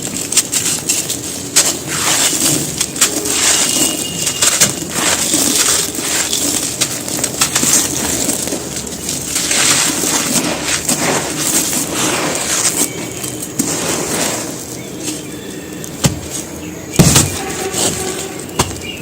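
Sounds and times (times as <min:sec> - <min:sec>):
dry cement crunching and cracking: 0:00.0 - 0:19.0.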